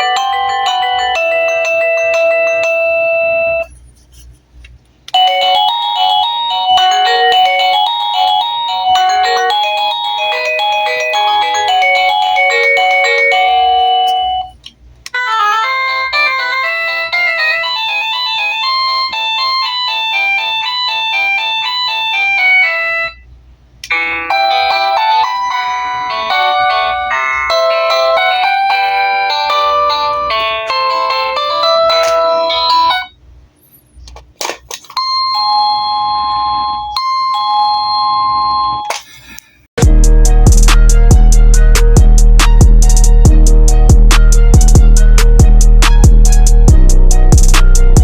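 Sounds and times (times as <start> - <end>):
electronic doorbell chime tunes: 0.0 - 3.7, 5.2 - 14.6, 15.6 - 23.2, 23.9 - 33.1, 35.0 - 38.9.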